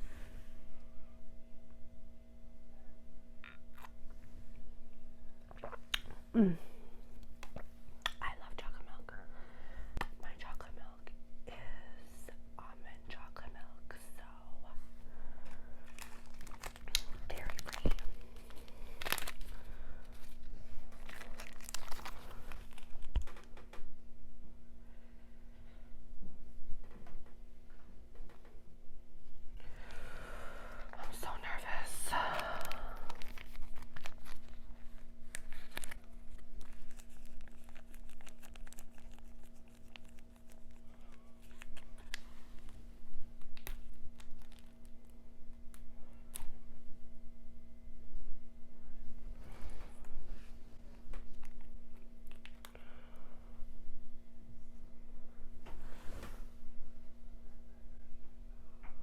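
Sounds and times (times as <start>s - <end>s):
low steady hum: 0.0s - 59.0s
packaging crinkling and crackling: 15.8s - 23.7s, 32.1s - 42.8s, 43.4s - 46.5s.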